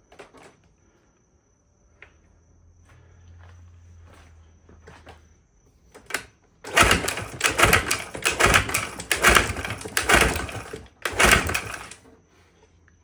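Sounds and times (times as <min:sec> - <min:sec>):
outboard motor recoil cranking: 0:06.0 - 0:12.0.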